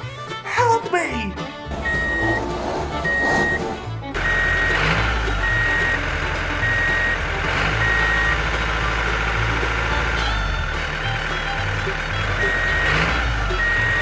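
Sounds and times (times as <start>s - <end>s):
low steady rumble: 1.4s - 14.0s
reversing alarm beeping: 1.8s - 4.8s, 5.4s - 6.0s, 6.6s - 7.2s, 7.8s - 8.4s.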